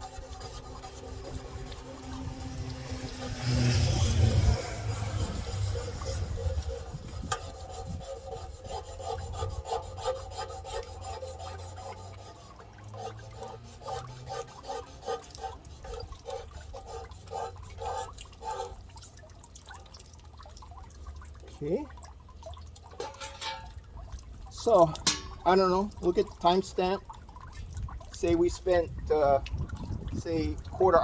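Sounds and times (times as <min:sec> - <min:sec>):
sandpaper scrubbing metal: 0:00.0 - 0:18.8.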